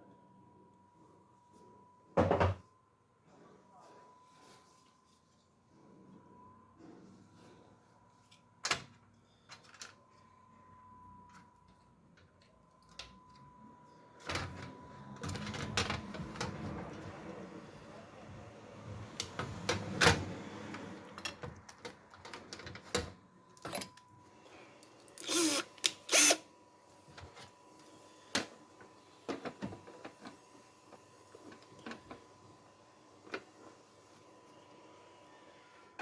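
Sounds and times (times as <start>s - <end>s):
faint steady tone: 0.0s - 15.5s.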